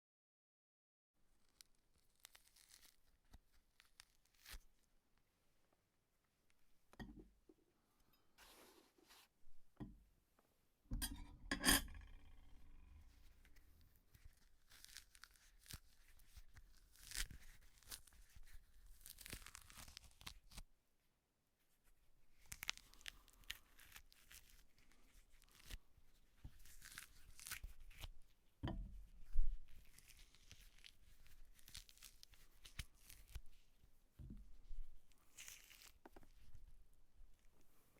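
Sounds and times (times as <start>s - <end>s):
short ripping pulls of peeling: 1.4s - 4.7s, 14.2s - 20.6s.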